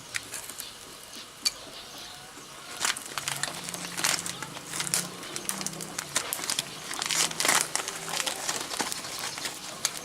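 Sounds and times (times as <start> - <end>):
plastic bag crinkling and rustling: 2.6 - 10.0.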